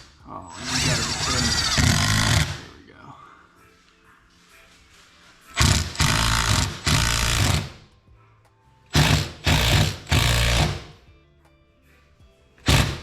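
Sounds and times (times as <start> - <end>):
impact driver rattling bursts: 0.7 - 2.7, 5.6 - 7.8, 8.9 - 11.0, 12.6 - 13.0.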